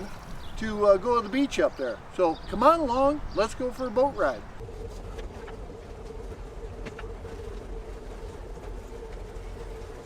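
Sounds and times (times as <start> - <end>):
motorboat engine running: 4.6 - 10.0.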